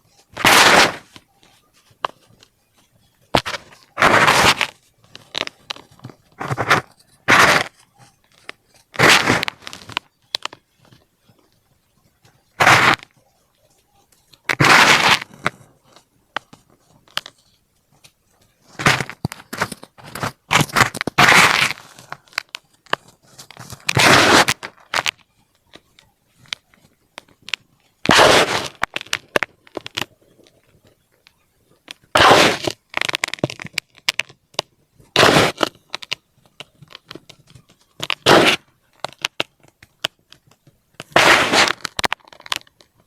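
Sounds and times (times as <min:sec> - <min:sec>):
small crackles: 0:00.0 - 0:43.0.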